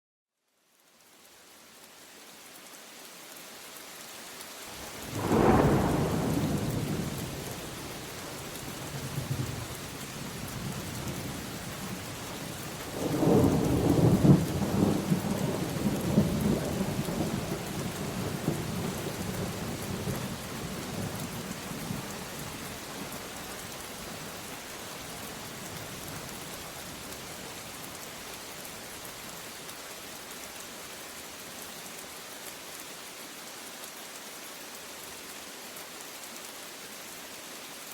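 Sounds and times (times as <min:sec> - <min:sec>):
steady rain falling: 0:00.4 - 0:37.9
rolling thunder: 0:05.0 - 0:07.4.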